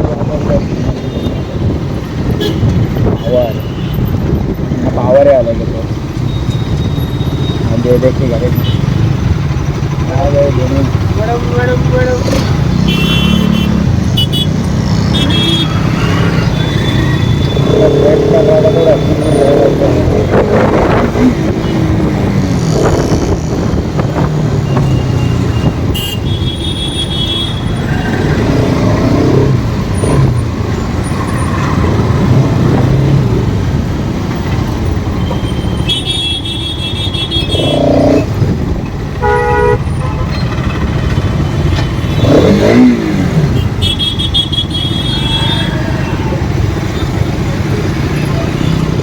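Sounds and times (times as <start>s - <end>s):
wind rushing on microphone: 0.0s - 5.8s, 19.6s - 24.9s
vehicle horns honking: 2.3s - 4.2s, 12.8s - 17.7s, 24.6s - 28.4s, 35.1s - 37.9s, 39.2s - 42.8s, 43.4s - 46.3s.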